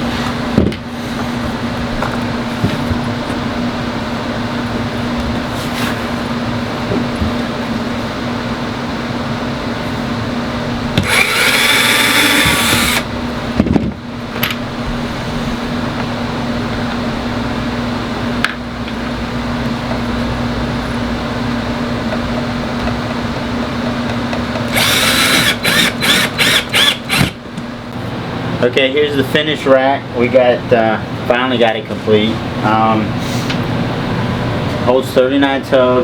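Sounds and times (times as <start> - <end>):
steady hum: 0.0 - 36.0
power drill driving screws: 11.0 - 13.1, 24.7 - 27.4.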